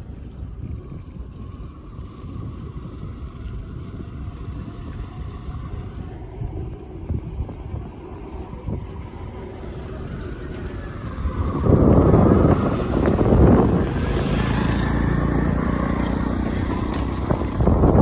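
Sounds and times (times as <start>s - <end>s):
wind on microphone: 0.0s - 18.0s
motor vehicle passing close: 9.1s - 18.0s.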